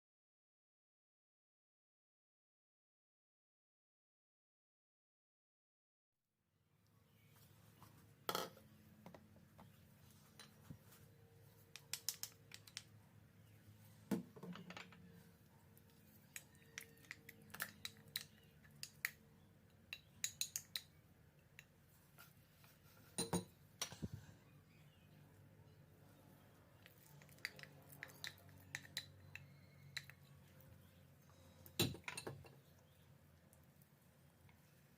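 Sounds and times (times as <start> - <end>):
faint low hum: 6.6 - 34.9.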